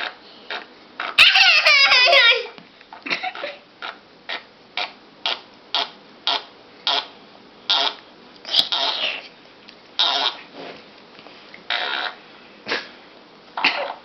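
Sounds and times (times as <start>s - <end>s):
fart noises: 3.3s - 7.1s, 7.7s - 9.4s, 10.0s - 10.8s, 11.7s - 12.9s, 13.6s - 14.0s.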